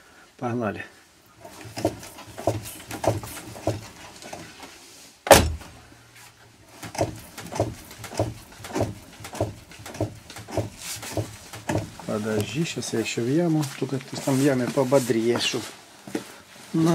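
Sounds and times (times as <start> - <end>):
loud thump: 5.2 - 5.8
car strut knocking: 6.9 - 12.0.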